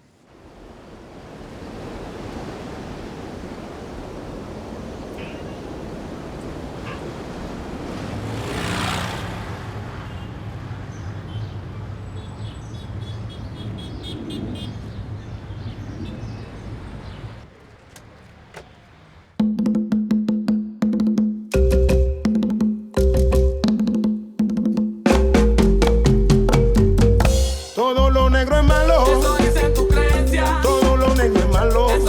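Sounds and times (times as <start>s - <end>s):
steady wash of surf-like noise: 0.0s - 10.0s.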